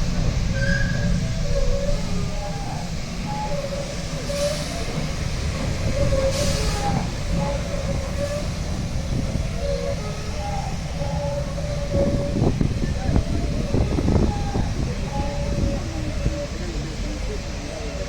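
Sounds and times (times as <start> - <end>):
steam hiss bursts: 0.0 - 10.1
steam locomotive rumbling: 0.0 - 18.0
faint squeals: 0.5 - 5.2.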